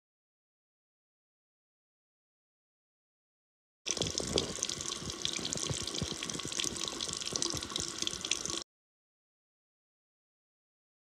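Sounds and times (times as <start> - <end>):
tap water running into sink: 3.9 - 8.6.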